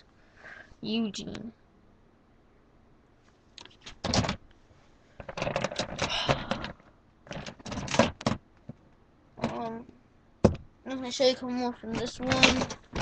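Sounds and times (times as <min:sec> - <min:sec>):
plastic figures clicking and clattering: 0:03.6 - 0:04.4, 0:05.2 - 0:08.8, 0:11.9 - 0:13.0.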